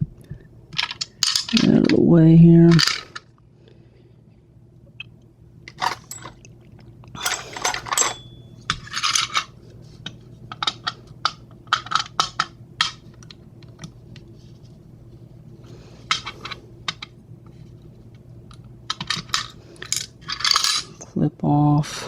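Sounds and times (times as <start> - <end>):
metal lock parts clinking: 5.7 - 6.4, 7.2 - 9.4.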